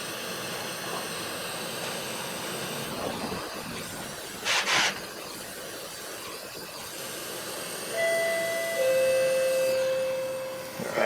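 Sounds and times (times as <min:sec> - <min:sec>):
heat gun blowing: 0:04.4 - 0:05.1.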